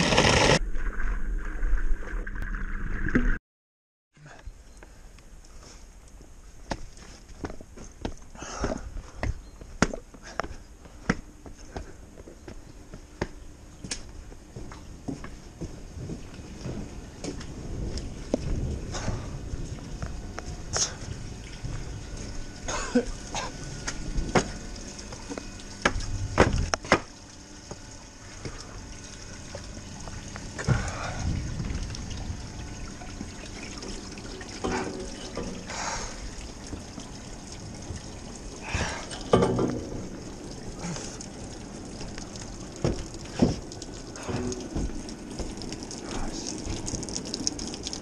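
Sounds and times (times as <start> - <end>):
water trickling and gurgling in drain: 14.6 - 48.0
splashes and knocks: 21.6 - 27.8, 33.2 - 37.2, 38.8 - 48.0.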